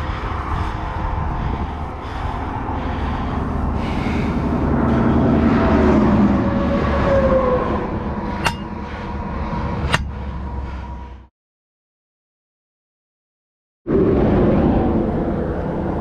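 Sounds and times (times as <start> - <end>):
vehicle engine rumbling: 0.0 - 11.3.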